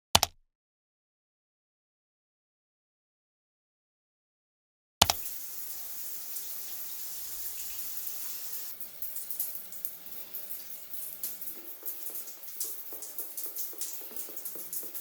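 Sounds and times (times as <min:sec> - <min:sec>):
water ticks and splashes: 0:05.0 - 0:15.0
running water: 0:05.1 - 0:15.0.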